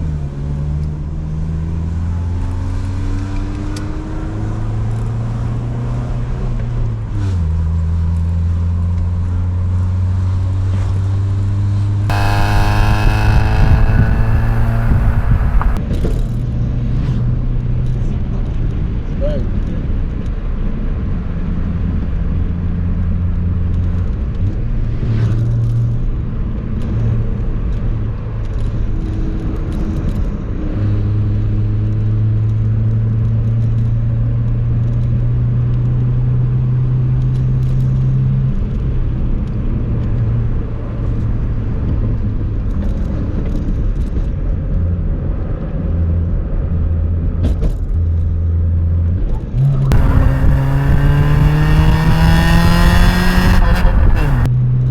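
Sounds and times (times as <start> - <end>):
car exhaust hum at low revs: 12.1 - 15.8, 49.9 - 54.5.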